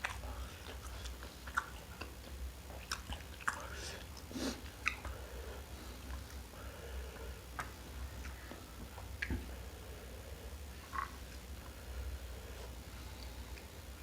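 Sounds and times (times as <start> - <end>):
wet mouth clicks while chewing: 0.0 - 5.2, 7.5 - 9.5, 10.9 - 11.8
steady low hum: 0.0 - 14.0.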